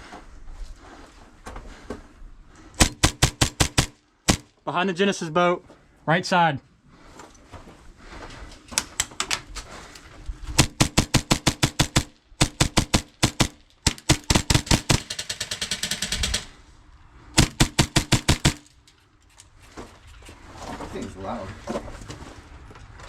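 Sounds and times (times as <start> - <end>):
airsoft pistols firing: 2.8 - 4.6, 10.6 - 16.6, 17.4 - 18.8.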